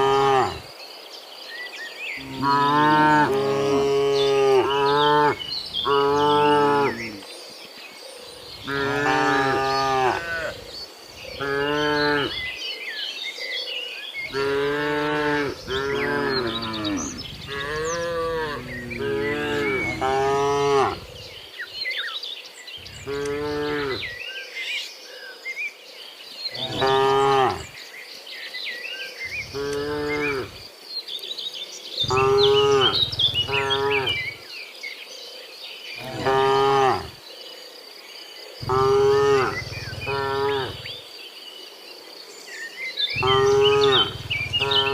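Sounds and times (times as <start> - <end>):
cattle mooing: 0.0 - 0.6, 2.2 - 7.2, 8.6 - 10.6, 14.3 - 21.2, 22.9 - 24.1, 26.6 - 27.7, 29.5 - 30.6, 32.0 - 34.4, 36.0 - 37.1, 38.6 - 40.9, 43.2 - 44.9.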